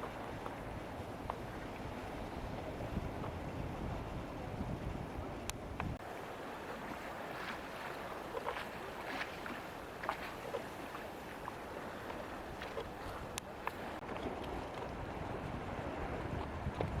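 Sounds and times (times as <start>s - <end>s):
slush ice shifting on water: 6.3s - 13.8s.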